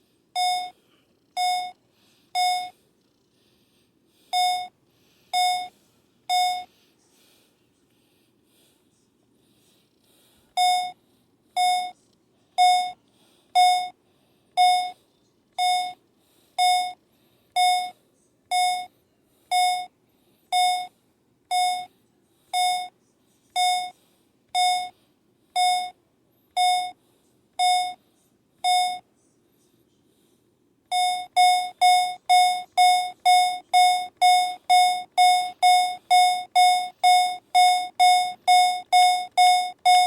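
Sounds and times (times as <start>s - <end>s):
fire alarm beeping: 0.4s - 0.7s, 1.4s - 1.8s, 2.4s - 2.7s, 4.3s - 4.7s, 5.3s - 5.7s, 6.3s - 6.7s, 10.6s - 11.0s, 11.6s - 12.0s, 12.6s - 13.0s, 13.6s - 14.0s, 14.6s - 15.0s, 15.6s - 16.0s, 16.6s - 17.0s, 17.6s - 17.9s, 18.5s - 18.9s, 19.5s - 19.9s, 20.5s - 20.9s, 21.5s - 21.9s, 22.6s - 22.9s, 23.6s - 23.9s, 24.6s - 24.9s, 25.6s - 26.0s, 26.6s - 27.0s, 27.6s - 28.0s, 28.6s - 29.0s, 30.9s - 40.0s.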